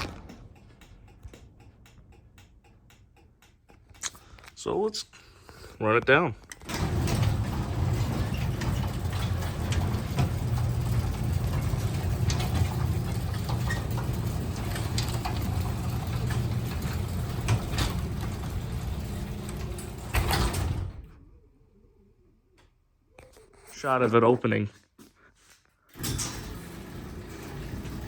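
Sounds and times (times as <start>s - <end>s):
door rattling and clicking: 6.4s - 21.1s
garage door opener motor hum: 6.6s - 21.4s, 25.9s - 28.0s.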